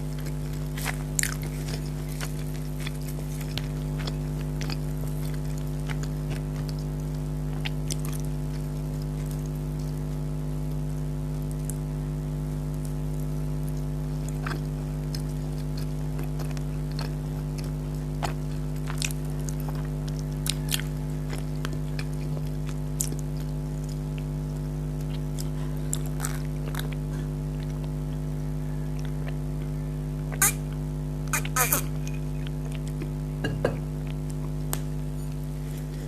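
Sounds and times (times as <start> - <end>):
person chewing and eating: 0.0 - 10.9, 12.8 - 36.0
steady low hum: 0.0 - 36.0
mouth clicks and crackles: 29.0 - 33.2.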